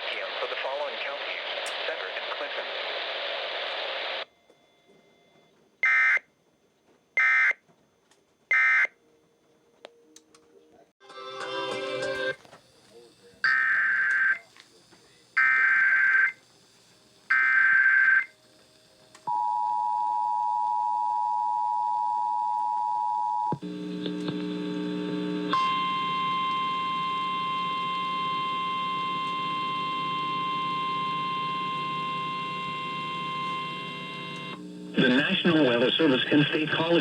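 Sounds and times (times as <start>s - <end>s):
low buzz: 23.6s - 35.8s
single-tone warning alarm: 25.5s - 34.6s.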